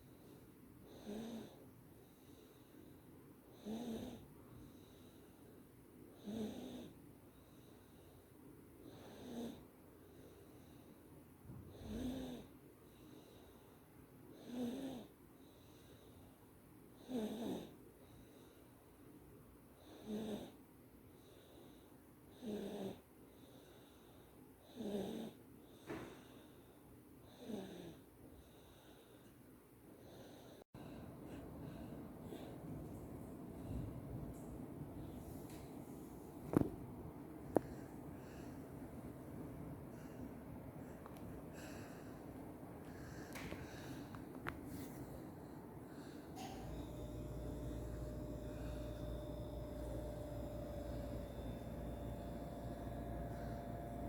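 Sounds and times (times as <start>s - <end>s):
baby snoring: 0.9s - 1.6s, 3.6s - 4.3s, 6.2s - 7.0s, 8.9s - 9.6s, 11.7s - 12.5s, 14.4s - 15.1s, 17.0s - 17.8s, 19.8s - 20.6s, 22.4s - 23.0s, 24.7s - 25.4s, 46.0s - 54.0s.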